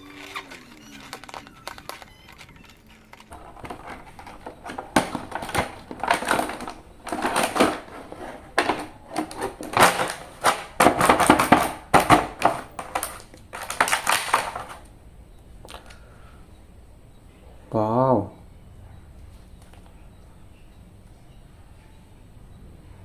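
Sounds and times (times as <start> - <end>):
plastic packaging crinkling: 0.0 - 14.9.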